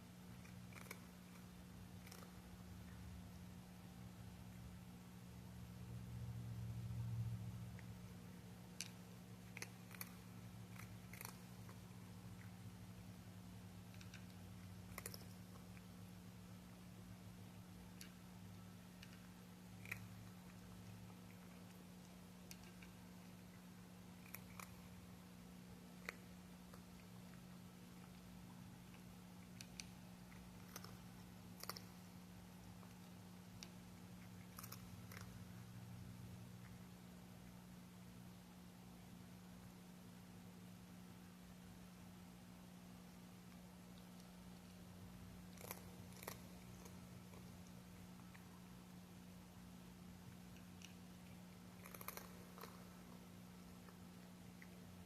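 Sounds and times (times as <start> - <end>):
low electrical hum: 0.0 - 55.0
cat crunching dry treats: 0.3 - 2.5, 8.8 - 12.2, 13.8 - 16.0, 17.9 - 25.0, 25.8 - 35.5, 45.4 - 48.7, 50.3 - 54.9.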